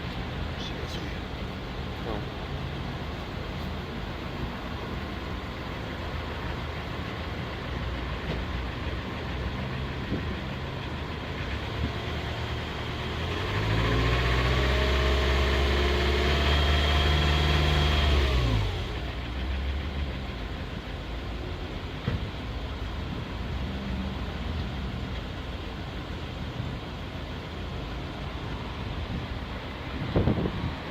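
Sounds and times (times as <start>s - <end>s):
diesel engine idling and revving: 0.0s - 30.9s.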